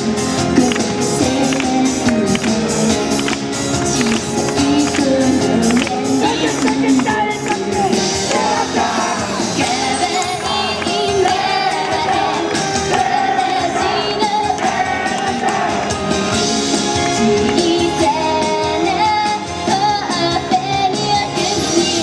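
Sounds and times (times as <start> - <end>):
pop backing track with beat: 0.0 - 22.0
girls singing: 0.5 - 3.3, 3.9 - 15.9.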